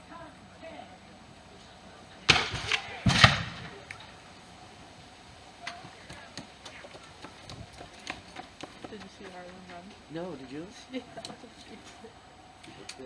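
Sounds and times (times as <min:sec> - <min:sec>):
musket gunshots with echo: 0:02.2 - 0:05.1.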